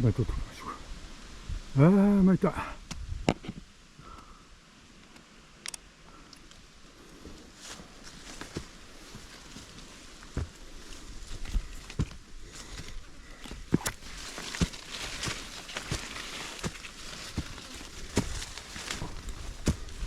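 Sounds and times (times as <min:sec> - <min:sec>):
rustle: 0:00.0 - 0:20.0
footsteps on mountain trail: 0:07.0 - 0:20.0.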